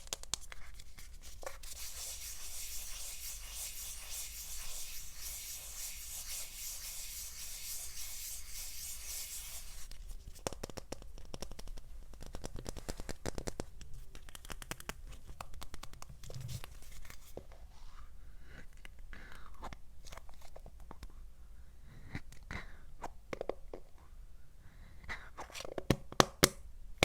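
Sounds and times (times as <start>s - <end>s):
rubbing on a surface: 0.3s - 10.0s.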